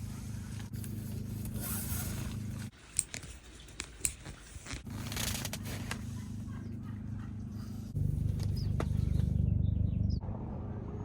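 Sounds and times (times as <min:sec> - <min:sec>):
rope scraping and rustling: 0:00.7 - 0:02.7.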